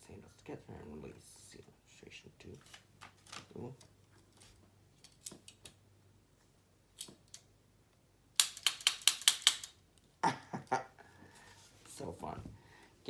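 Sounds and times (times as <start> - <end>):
kitchen tongs clicking: 8.4 - 9.8.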